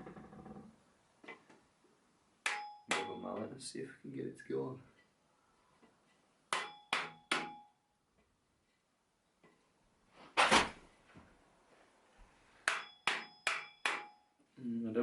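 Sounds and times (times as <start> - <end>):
rubber mallet striking pipe: 2.4 - 3.3, 6.5 - 7.6, 12.7 - 14.2.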